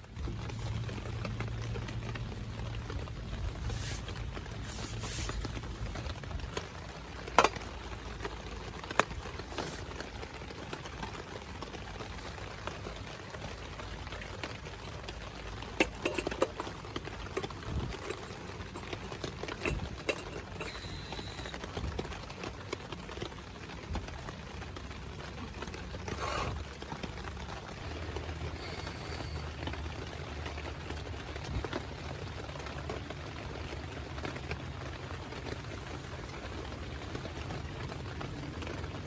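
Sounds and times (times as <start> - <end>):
steady rain falling: 0.0 - 39.0.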